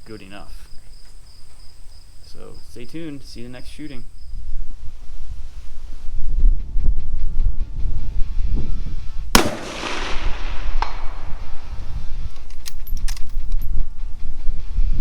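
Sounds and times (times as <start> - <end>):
steady low rumble: 5.9 - 12.5
rifle shot echoing: 9.3 - 11.9.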